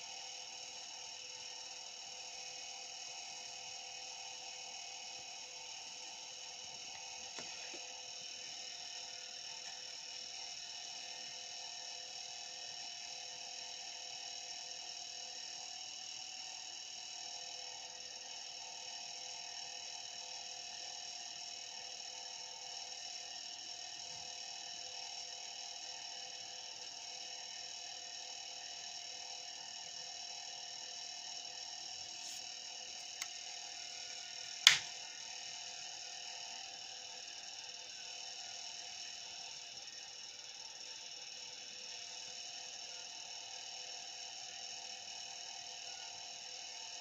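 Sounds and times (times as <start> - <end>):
sharp loud click: 34.7 - 34.9.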